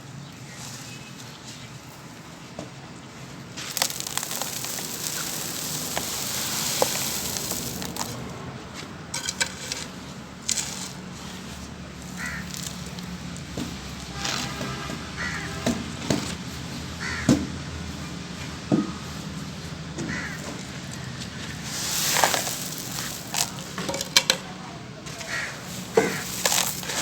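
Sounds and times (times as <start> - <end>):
charcoal crunching: 3.5 - 8.3, 9.2 - 14.6, 21.4 - 24.4, 25.1 - 27.0
charcoal grains pouring: 3.5 - 8.3, 12.2 - 13.2, 21.5 - 24.2, 25.2 - 27.0.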